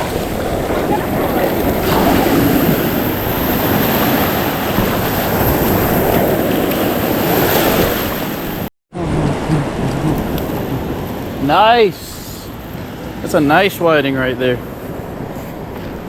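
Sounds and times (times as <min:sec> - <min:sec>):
wind buffeting microphone: 0:00.0 - 0:13.7
ocean surf washing: 0:00.0 - 0:16.0.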